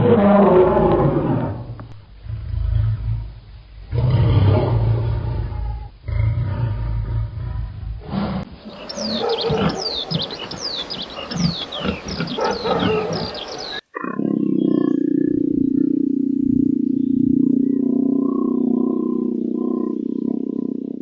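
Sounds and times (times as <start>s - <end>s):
low rumbling roar: 0.0s - 13.8s
low droning animal call: 0.0s - 21.0s
quick high chirps: 8.7s - 13.8s.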